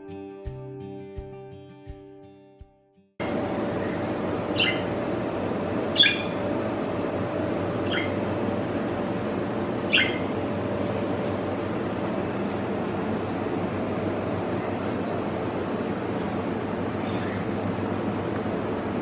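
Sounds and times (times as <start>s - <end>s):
steady background hum: 3.2s - 19.0s
budgie chirping: 3.8s - 4.9s, 5.9s - 6.4s, 7.8s - 8.2s, 9.9s - 10.3s.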